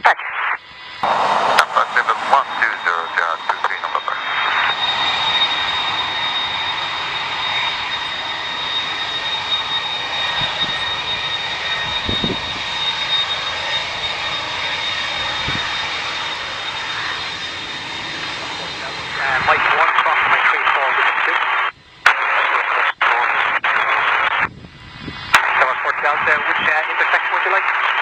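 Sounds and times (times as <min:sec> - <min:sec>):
jet engines running: 0:00.0 - 0:28.0.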